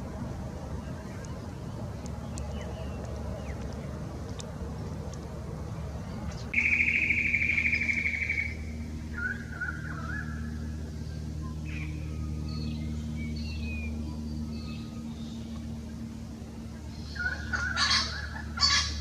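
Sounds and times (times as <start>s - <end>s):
steady low hum: 0.0s - 19.0s
bird trilling and calling: 6.5s - 10.6s, 16.9s - 19.0s
thin whistled bird notes: 6.5s - 10.6s.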